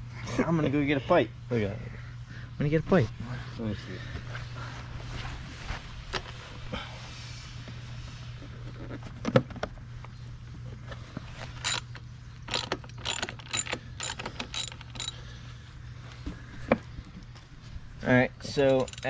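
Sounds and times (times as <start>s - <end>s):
wrench ratchet clicking: 11.6s - 15.2s, 18.6s - 19.0s.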